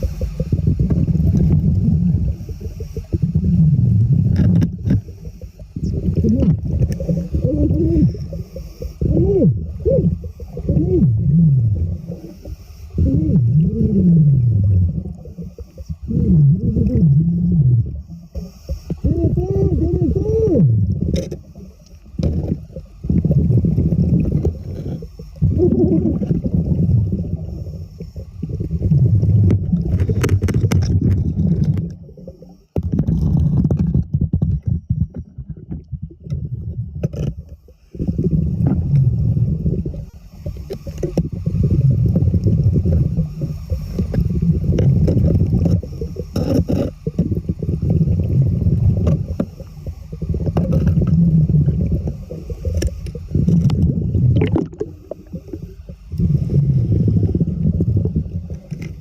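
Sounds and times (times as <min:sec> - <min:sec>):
underwater rumbling and gurgling: 0:00.0 - 0:59.0.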